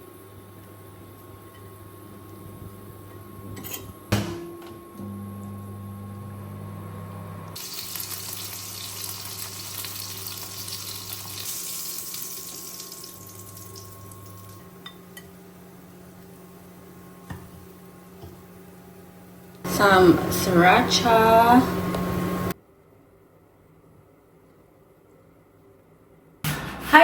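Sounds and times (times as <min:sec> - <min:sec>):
low electrical hum: 0:00.0 - 0:27.0
water running from a tap: 0:07.6 - 0:14.6.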